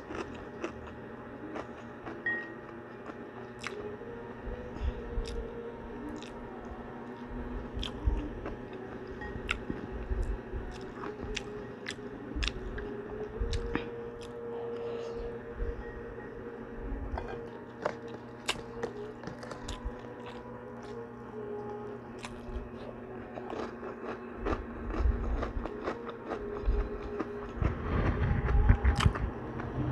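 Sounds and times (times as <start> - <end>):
crunching and chewing pork rinds: 0.0 - 3.9, 5.2 - 5.4, 6.1 - 6.5, 7.2 - 14.4, 17.2 - 21.0, 22.1 - 29.7.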